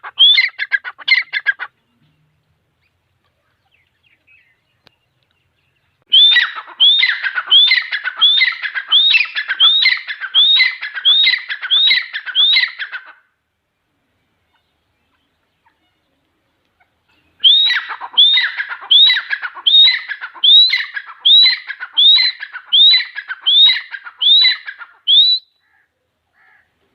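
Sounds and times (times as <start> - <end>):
bird calling rising notes: 6.1 - 13.2, 17.2 - 25.6.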